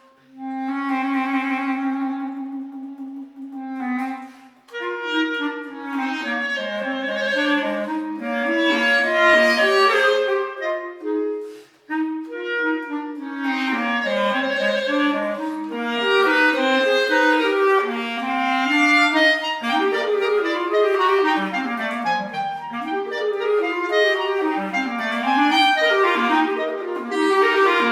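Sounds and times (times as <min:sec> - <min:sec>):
clarinet melody: 0:00.0 - 0:27.9.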